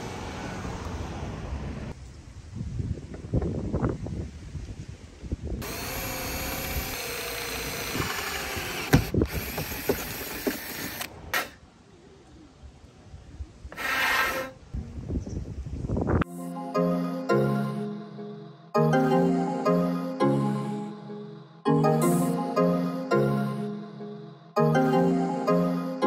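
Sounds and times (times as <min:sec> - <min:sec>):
power drill running: 0:05.6 - 0:11.5.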